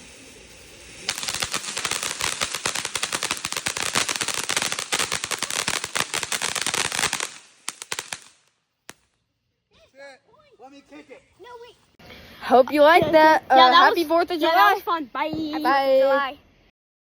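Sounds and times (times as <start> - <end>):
firecrackers hissing and cracking: 0.0 - 9.4.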